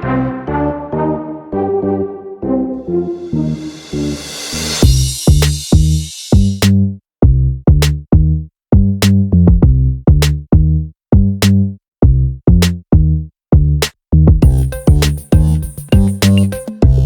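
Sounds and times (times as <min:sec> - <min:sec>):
electronic music with drum-machine beat: 0:14.4 - 0:17.0.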